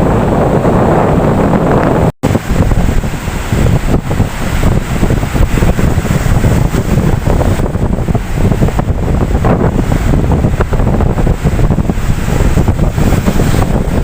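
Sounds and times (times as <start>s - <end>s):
ocean waves surging: 0.0s - 14.0s
wind buffeting microphone: 0.0s - 14.0s.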